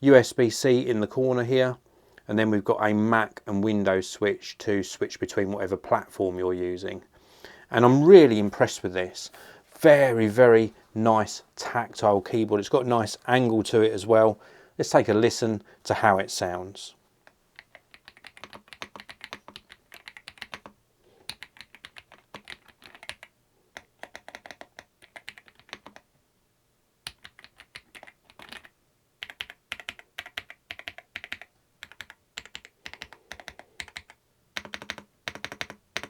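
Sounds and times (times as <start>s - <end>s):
mechanical keyboard typing: 17.6s - 26.0s, 27.0s - 36.0s.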